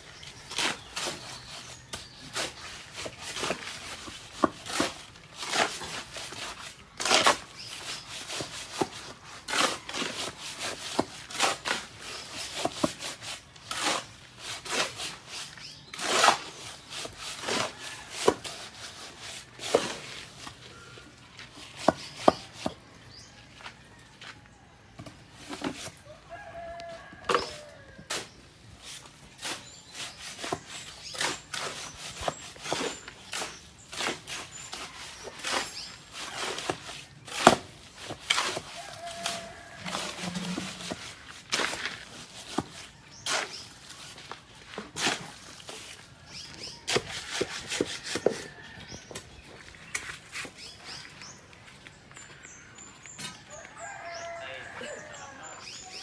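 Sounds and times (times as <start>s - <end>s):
rooster crowing: 26.0s - 28.1s, 38.7s - 41.0s, 47.1s - 49.0s, 53.4s - 56.0s.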